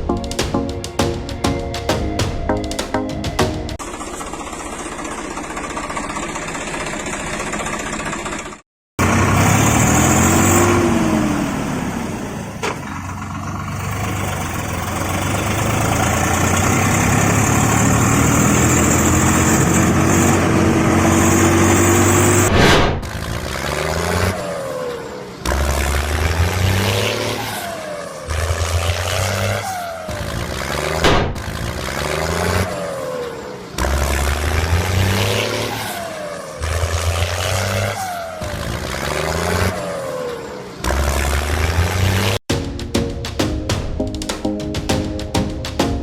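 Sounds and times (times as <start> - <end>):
heavy machinery engine revving: 3.8 - 42.4.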